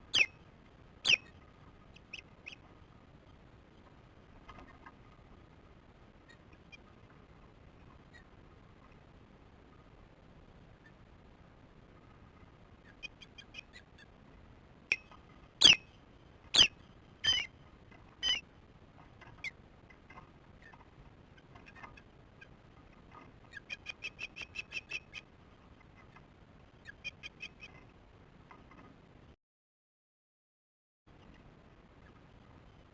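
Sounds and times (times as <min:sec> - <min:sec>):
osprey alarm calls: 0:00.1 - 0:00.4, 0:01.0 - 0:01.3, 0:02.0 - 0:02.6, 0:14.9 - 0:15.9, 0:16.5 - 0:17.5, 0:18.2 - 0:18.4, 0:23.5 - 0:25.2.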